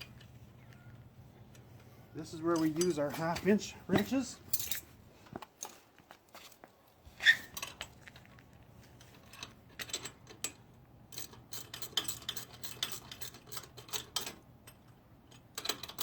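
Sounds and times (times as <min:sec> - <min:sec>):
wrenches clinking on metal bolts: 0:01.5 - 0:05.8, 0:09.0 - 0:16.0.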